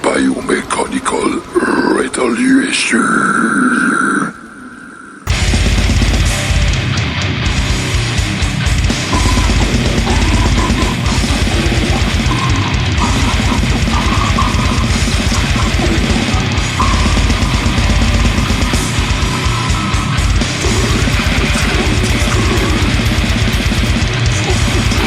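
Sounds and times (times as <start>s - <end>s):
heavily distorted guitars: 0.0s - 25.0s
fast pounding drums: 5.3s - 25.0s.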